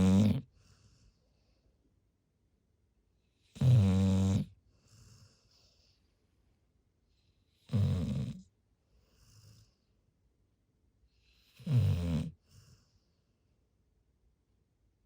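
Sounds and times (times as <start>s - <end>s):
dog snoring: 0.0s - 1.0s, 3.3s - 5.8s, 7.5s - 9.8s, 11.2s - 12.9s
faint dog breath: 0.4s - 1.9s, 4.6s - 7.6s, 8.3s - 10.2s, 11.1s - 13.6s.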